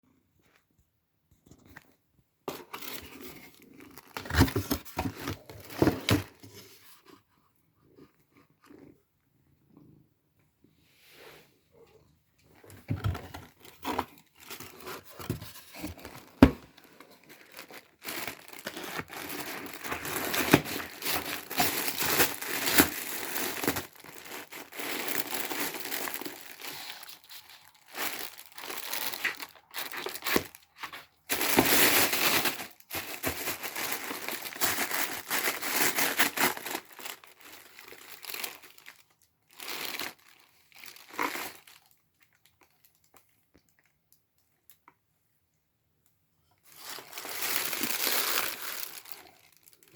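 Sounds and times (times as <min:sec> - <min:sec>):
packaging crinkling and rustling: 0:02.5 - 0:07.1, 0:12.4 - 0:43.9, 0:46.6 - 0:49.9.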